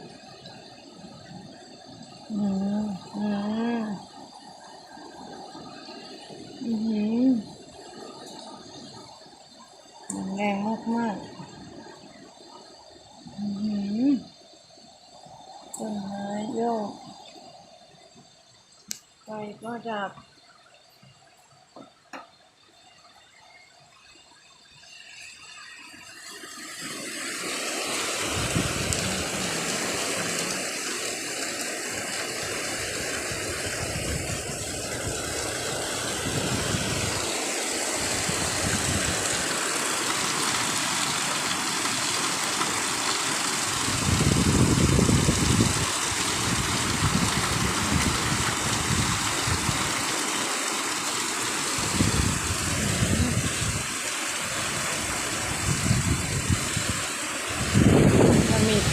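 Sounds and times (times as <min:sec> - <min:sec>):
heavy rain: 0:25.0 - 0:58.9
wind buffeting microphone: 0:27.4 - 0:30.8, 0:32.4 - 0:39.6, 0:43.7 - 0:50.1, 0:51.8 - 0:58.9.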